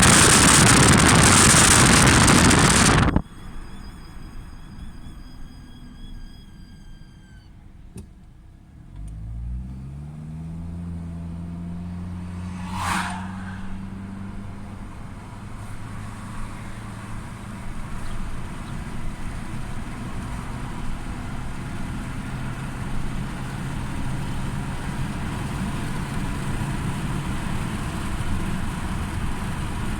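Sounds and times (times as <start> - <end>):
car engine starting and idling: 0.0 - 12.6
high thin squeak: 2.7 - 7.7
short sharp noise: 12.0 - 14.7.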